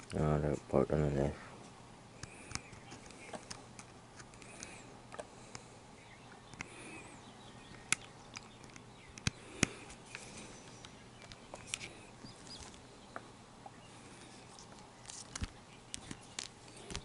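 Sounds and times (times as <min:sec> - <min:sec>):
small parts clicking and tapping: 0:14.6 - 0:17.0.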